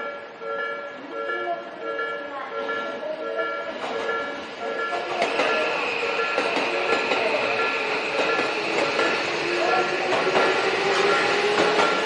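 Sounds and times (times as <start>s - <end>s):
level-crossing warning bell: 0.0s - 12.0s
train wheels rushing: 3.6s - 12.0s.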